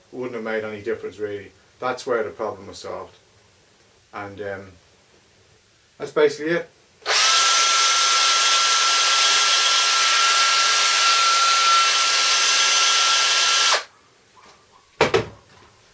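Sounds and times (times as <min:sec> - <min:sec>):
cordless drill whirring: 0:07.0 - 0:13.9.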